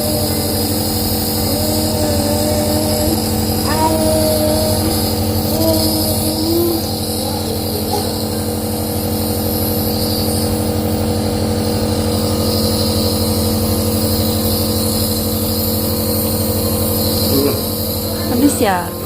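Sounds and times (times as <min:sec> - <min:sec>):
nebulizer motor humming: 0:00.0 - 0:19.0
hiss of air: 0:04.7 - 0:18.1.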